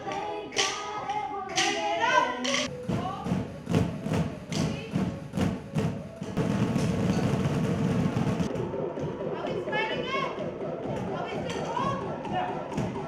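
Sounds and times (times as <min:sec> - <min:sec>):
playback music: 0:00.0 - 0:13.0
drumsticks striking exercise balls: 0:00.5 - 0:08.5.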